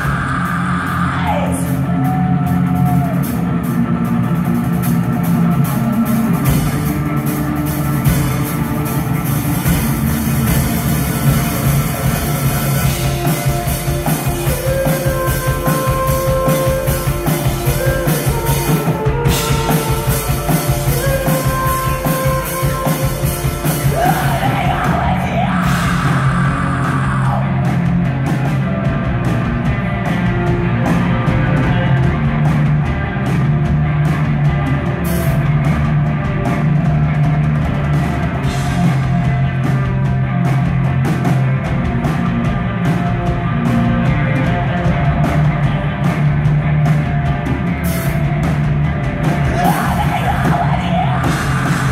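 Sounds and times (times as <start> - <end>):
drums hitting: 0.0 - 51.9
live rock band playing: 0.0 - 51.9.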